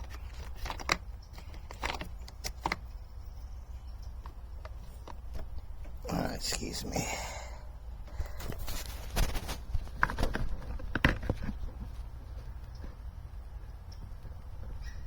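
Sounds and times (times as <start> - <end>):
tubing clicks and knocks: 0.0 - 2.9, 8.4 - 13.1
low steady hum: 0.0 - 15.0.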